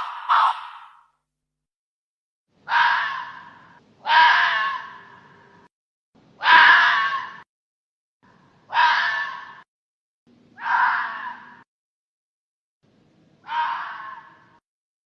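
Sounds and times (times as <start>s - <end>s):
fox rasping cries: 0.0s - 1.0s, 2.7s - 5.4s, 6.4s - 7.4s, 8.7s - 9.6s, 10.6s - 11.6s, 13.4s - 14.6s.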